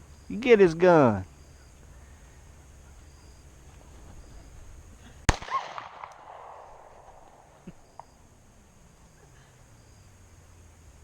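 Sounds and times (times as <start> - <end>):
pistol shot with echo: 5.3 - 8.2.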